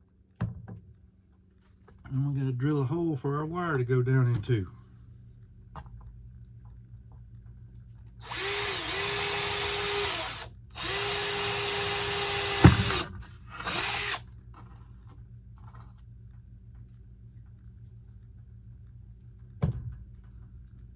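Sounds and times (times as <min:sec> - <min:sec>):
small electric drill running: 0:08.2 - 0:14.2.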